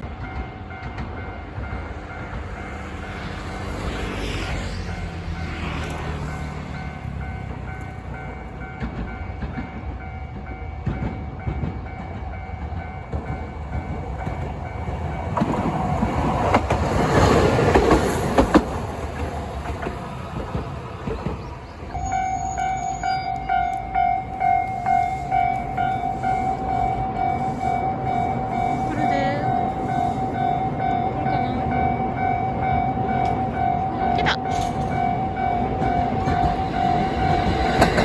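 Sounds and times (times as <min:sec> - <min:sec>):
train rumble: 0:00.0 - 0:38.0
level crossing bell ringing: 0:22.0 - 0:37.5.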